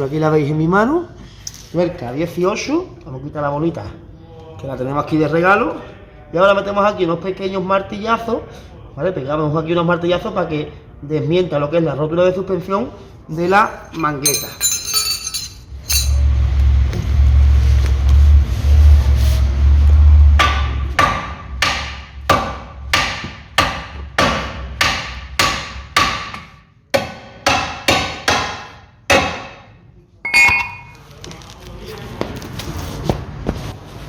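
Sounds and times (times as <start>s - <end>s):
hammer striking metal: 13.9s - 16.2s, 20.4s - 29.6s, 30.3s - 31.0s
loud low rumble: 16.0s - 20.9s.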